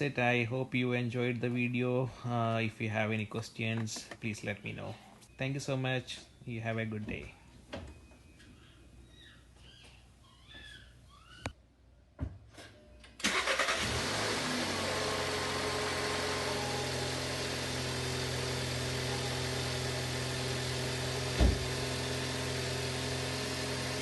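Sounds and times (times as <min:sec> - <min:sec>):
car engine starting and idling: 0:13.2 - 0:24.0
low thump: 0:21.4 - 0:21.7.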